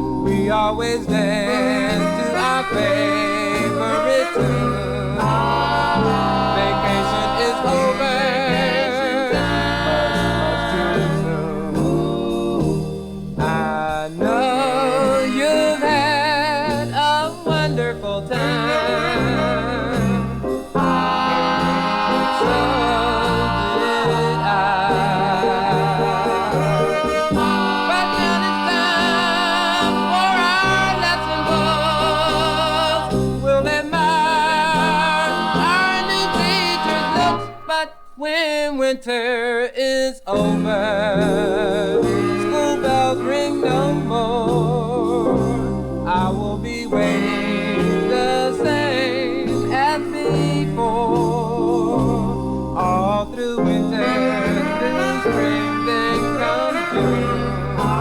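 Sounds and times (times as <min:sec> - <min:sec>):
bass and band: 0:00.0 - 0:37.7, 0:40.4 - 0:58.0
vibrato lead line: 0:00.0 - 0:38.1, 0:53.8 - 0:58.0.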